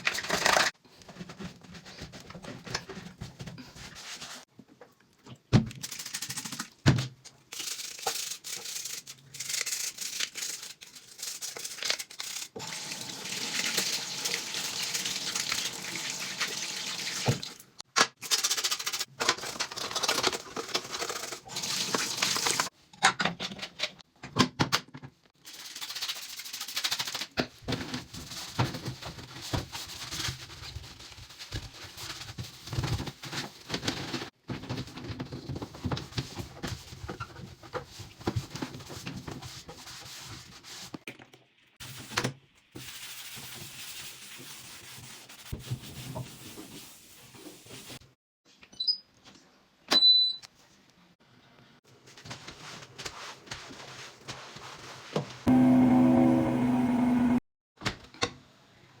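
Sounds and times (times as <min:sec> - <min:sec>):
brush scrubbing: 0:52.6 - 0:55.1.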